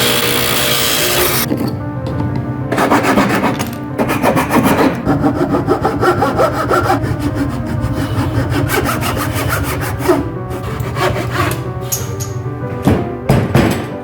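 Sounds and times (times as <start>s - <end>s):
hand saw cutting wood: 0.0s - 1.5s, 2.8s - 11.8s.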